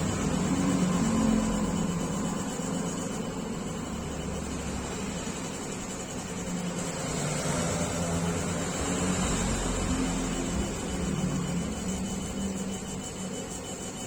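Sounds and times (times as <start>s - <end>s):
fans and pumps humming: 0.0s - 14.0s
laser machine low whine: 0.0s - 14.0s.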